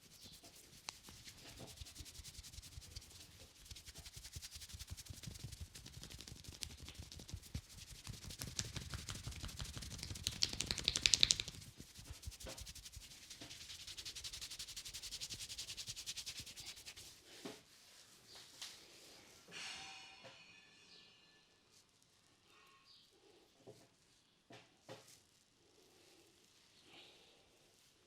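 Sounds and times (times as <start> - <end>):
hands rubbing and tapping hair: 0.0 - 18.9.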